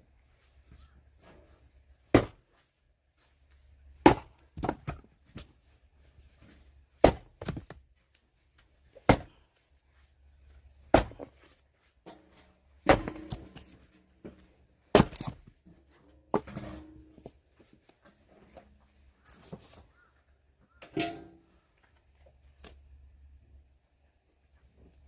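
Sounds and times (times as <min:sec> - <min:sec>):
axe splitting logs: 0:02.1 - 0:02.5, 0:04.0 - 0:05.5, 0:07.0 - 0:07.8, 0:09.0 - 0:09.4, 0:10.9 - 0:11.4, 0:12.8 - 0:13.7, 0:14.9 - 0:15.5, 0:16.3 - 0:16.8.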